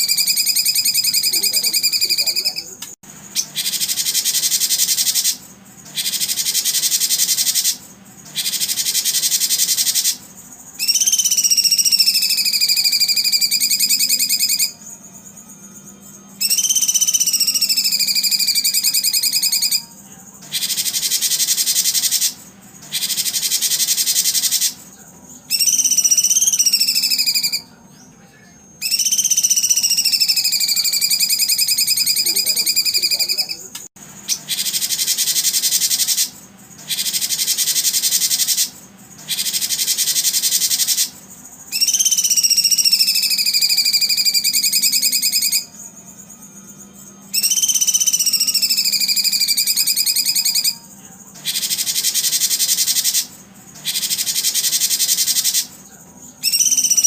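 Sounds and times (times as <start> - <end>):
songbird buzzing trills: 0.0 - 57.0
whistled sliding bird tones: 10.8 - 14.8, 16.4 - 19.9, 25.5 - 27.7, 28.8 - 33.6, 41.7 - 45.7, 47.3 - 50.8, 56.4 - 57.0.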